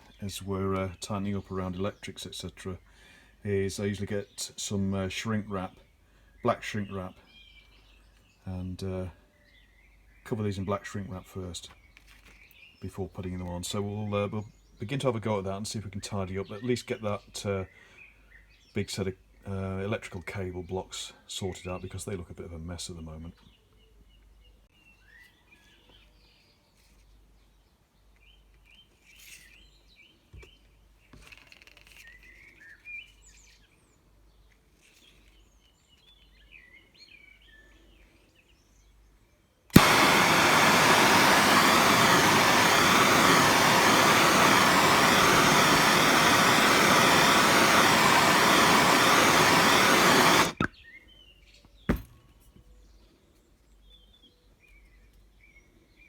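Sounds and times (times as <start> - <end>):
faint birdsong: 0.0 - 56.0
heat gun blowing: 39.7 - 50.7, 51.9 - 52.2.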